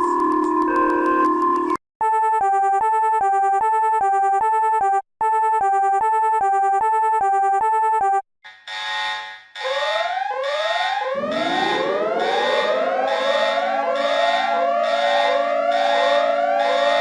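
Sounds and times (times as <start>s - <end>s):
rising electronic siren wail: 9.6s - 17.0s
two-note electronic alert tone: 11.0s - 17.0s.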